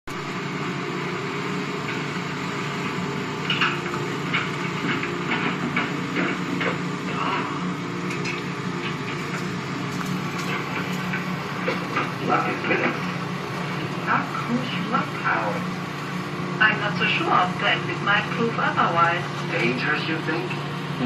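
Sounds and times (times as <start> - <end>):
low hum with hiss: 0.1 - 21.0.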